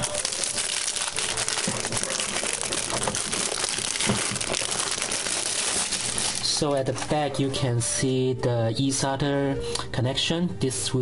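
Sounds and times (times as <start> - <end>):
packaging crinkling and rustling: 0.0 - 7.3.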